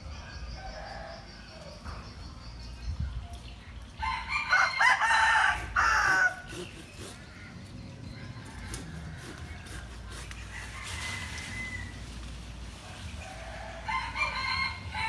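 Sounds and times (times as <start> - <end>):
rooster crowing: 4.0 - 6.5, 10.5 - 12.1, 13.2 - 15.0.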